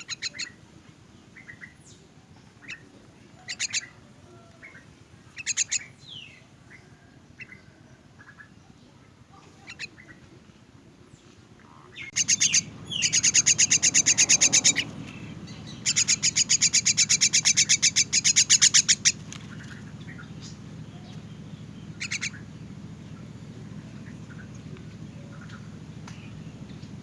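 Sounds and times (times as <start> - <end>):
low steady hum: 0.0 - 27.0
bird chick begging chirps: 2.6 - 8.5, 9.5 - 10.2, 11.9 - 23.2.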